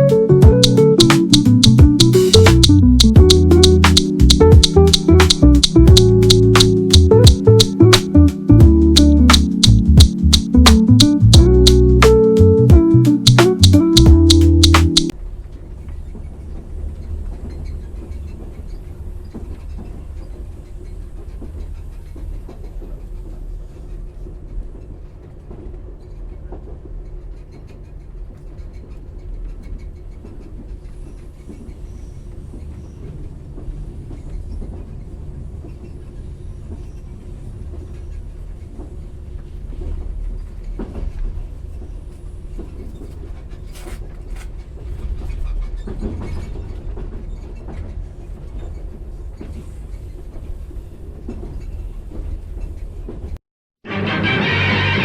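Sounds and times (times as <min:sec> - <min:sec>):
sharp metallic noises: 0:00.1 - 0:15.1
subway train rumbling: 0:15.1 - 0:55.0.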